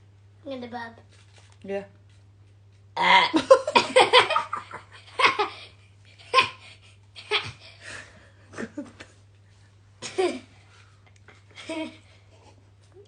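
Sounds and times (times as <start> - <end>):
girl giggling: 3.2 - 9.1, 10.0 - 10.5, 11.6 - 12.6.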